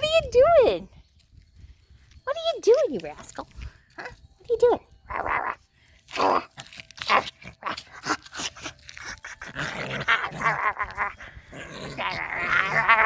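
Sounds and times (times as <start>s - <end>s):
puppy growling: 6.2s - 13.0s.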